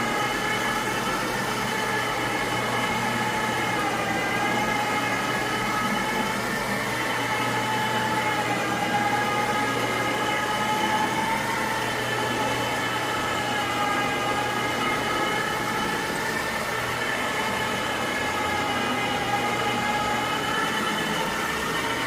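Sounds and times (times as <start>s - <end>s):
extraction machine high whine: 0.0s - 22.0s.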